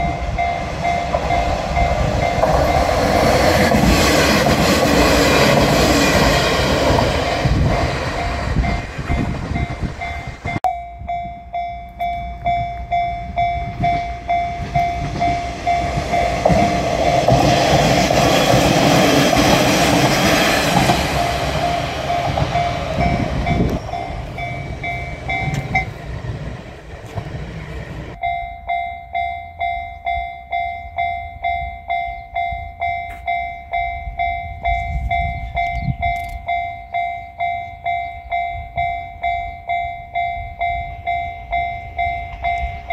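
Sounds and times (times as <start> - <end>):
diesel railcar passing: 0.0 - 42.9
level crossing electronic bell: 8.2 - 17.4, 21.2 - 25.9, 28.2 - 42.9.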